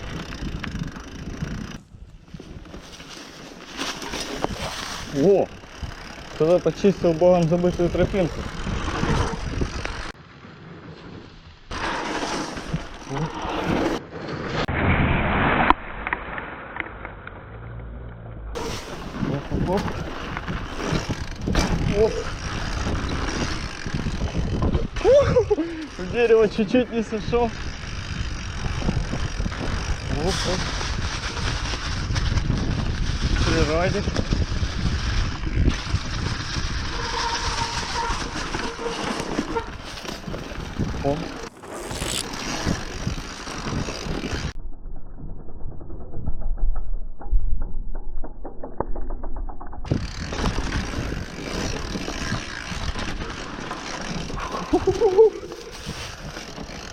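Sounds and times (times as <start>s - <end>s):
bike tyres rumbling on dirt: 0.0s - 56.9s
wind on microphone: 7.9s - 10.1s, 18.5s - 25.7s, 27.3s - 38.9s.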